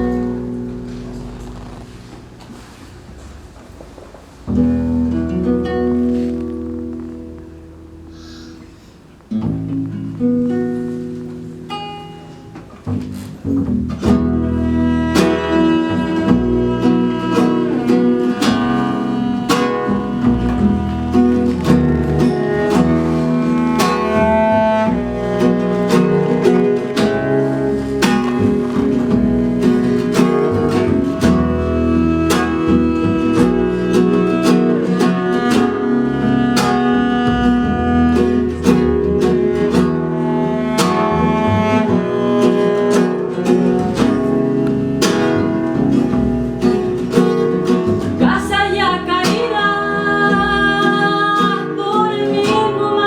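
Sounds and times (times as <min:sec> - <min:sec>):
plucked guitar notes: 0:00.0 - 0:03.8, 0:04.5 - 0:53.0
bowed string tones: 0:00.0 - 0:53.0
person singing: 0:48.2 - 0:53.0.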